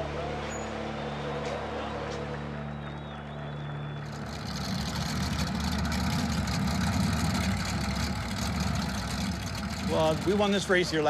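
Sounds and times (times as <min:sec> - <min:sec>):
race car engine idling: 0:04.1 - 0:11.0.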